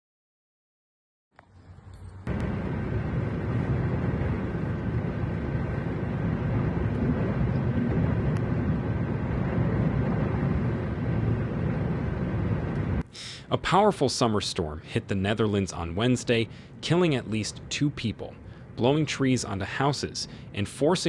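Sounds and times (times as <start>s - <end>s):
storm wind buffeting microphone: 2.2s - 13.0s.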